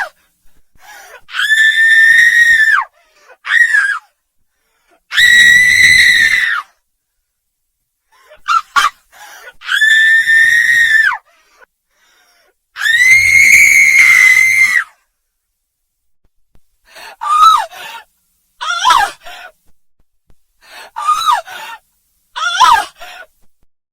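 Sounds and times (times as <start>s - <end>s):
woman screaming: 1.4s - 2.8s, 5.1s - 6.6s, 9.6s - 11.2s, 12.8s - 14.9s, 17.2s - 17.7s, 18.6s - 19.2s, 21.0s - 21.5s, 22.4s - 23.0s.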